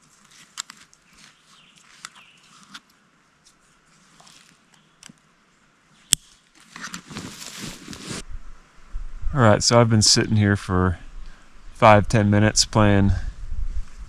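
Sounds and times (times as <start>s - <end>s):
light rustling: 6.8s - 8.9s.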